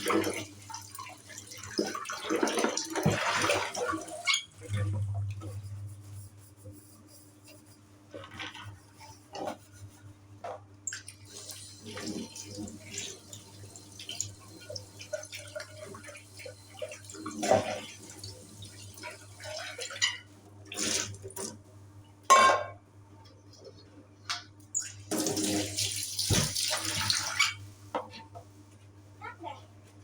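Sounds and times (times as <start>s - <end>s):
tap water running into sink: 10.9s - 21.6s, 25.0s - 27.6s.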